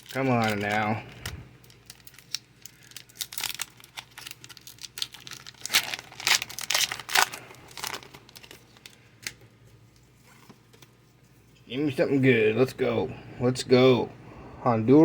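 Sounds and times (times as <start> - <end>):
foil wrapper crinkling and tearing: 0.0 - 9.5.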